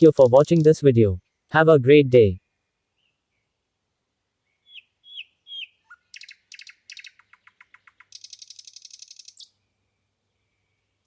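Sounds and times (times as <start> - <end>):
bird chirping and trilling: 0.0 - 1.4, 4.4 - 11.0.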